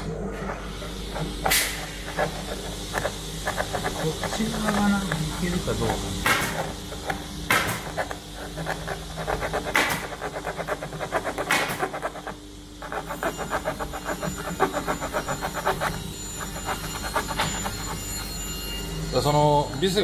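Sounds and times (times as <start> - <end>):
saw rasping through wood: 0.0 - 20.0.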